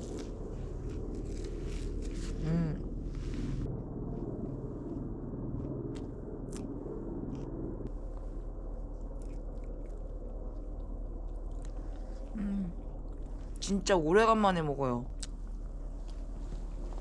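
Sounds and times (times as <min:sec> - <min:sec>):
crisp crunches: 0:00.0 - 0:02.7
person chewing lettuce wrap: 0:00.0 - 0:03.1, 0:05.9 - 0:13.6.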